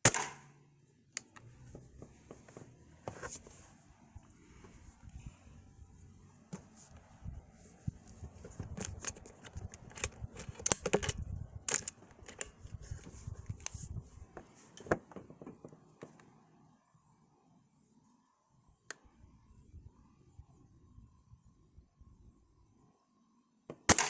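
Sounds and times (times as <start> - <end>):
rustling and clicking handling noise: 1.2 - 5.2, 6.4 - 16.3.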